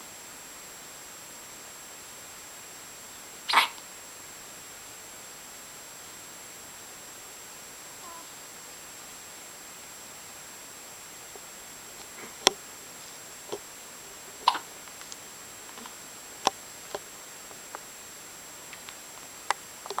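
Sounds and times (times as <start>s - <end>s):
person hiccuping: 3.5s - 3.8s.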